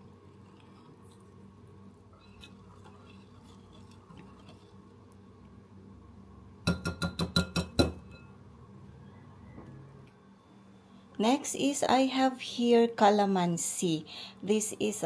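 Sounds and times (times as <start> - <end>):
utensil stirring in a bowl: 0.0 - 5.5
ringing knocks against a bowl: 6.7 - 8.3.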